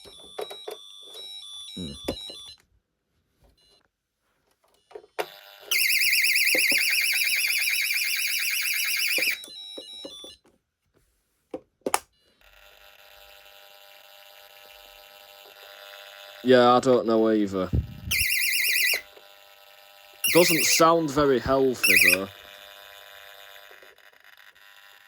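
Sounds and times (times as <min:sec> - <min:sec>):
alarm warbling high tone: 0:18.1 - 0:19.0, 0:20.3 - 0:20.9, 0:21.8 - 0:22.2.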